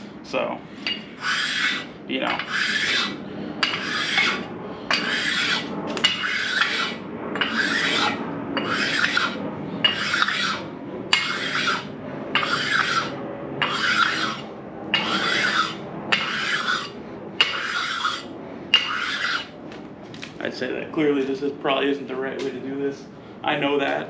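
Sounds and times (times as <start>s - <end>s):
stone scraping metal: 0.8s - 19.5s.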